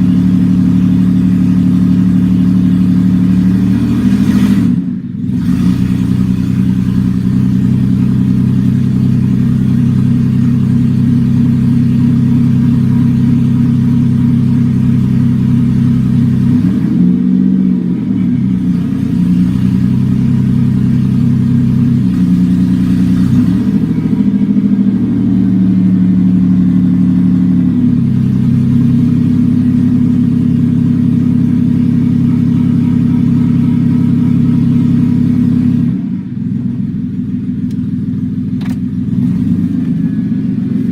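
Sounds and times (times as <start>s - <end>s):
engine revving: 0.0s - 36.8s, 38.6s - 40.9s
car engine idling loudly: 0.0s - 40.9s.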